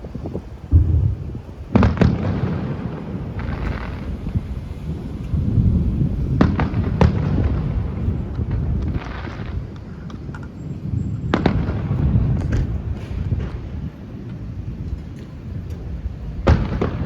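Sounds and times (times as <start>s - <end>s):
firework shell hissing crackle: 0.0s - 8.0s
distant fireworks bangs: 0.3s - 5.0s, 5.6s - 9.9s, 11.3s - 13.8s, 16.4s - 17.0s.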